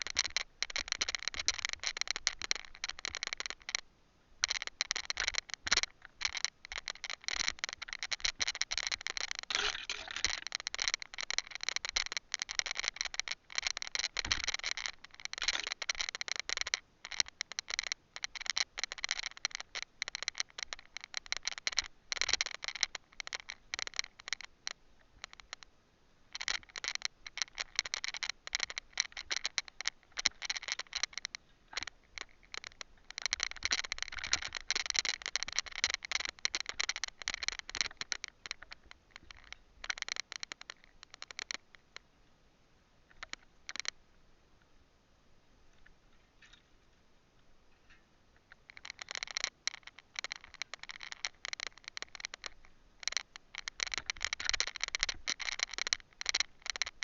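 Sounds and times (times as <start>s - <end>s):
loose camera rattling in mount: 4.4s - 17.7s, 26.4s - 41.6s.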